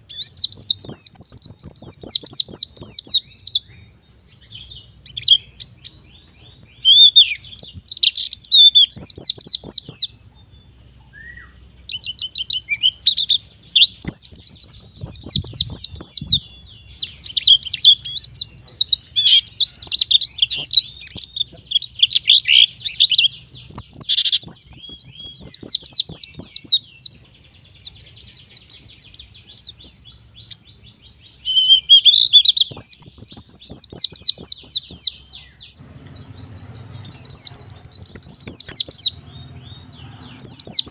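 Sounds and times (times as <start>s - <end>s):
bird twittering song: 0.0s - 40.9s.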